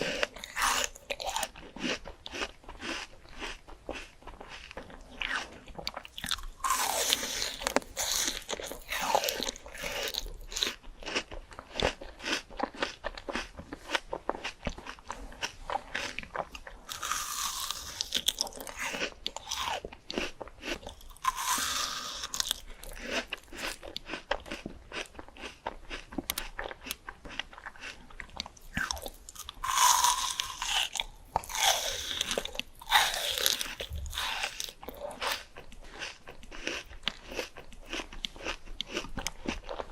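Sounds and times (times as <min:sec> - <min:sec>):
crunching and chewing fruit: 0:00.0 - 0:39.9.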